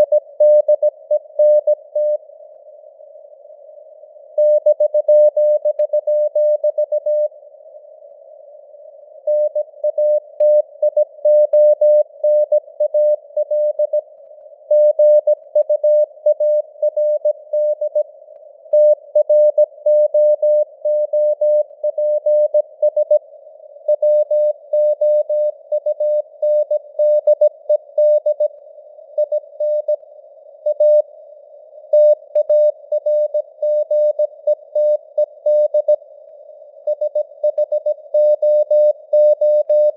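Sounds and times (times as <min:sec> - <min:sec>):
morse code tone: 0:32.0 - 0:36.0.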